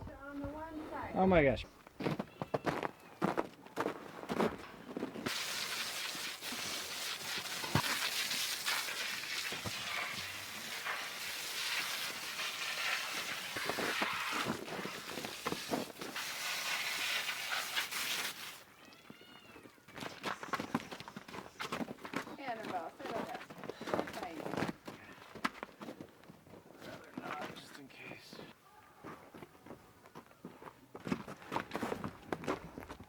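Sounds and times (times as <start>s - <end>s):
water hose spraying: 5.2s - 18.7s.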